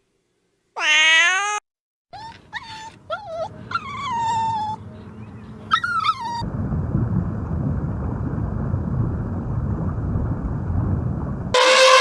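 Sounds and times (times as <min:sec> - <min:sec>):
cat meowing: 0:00.8 - 0:01.6, 0:02.2 - 0:04.8
low rumbling noise: 0:02.4 - 0:12.0.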